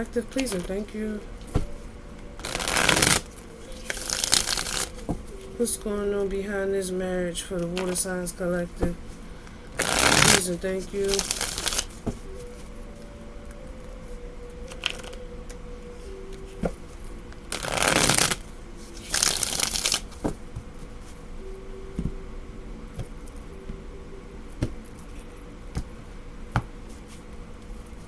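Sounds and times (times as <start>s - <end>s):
cards riffling: 2.4s - 5.5s, 9.8s - 10.4s, 11.1s - 12.6s, 17.5s - 20.4s.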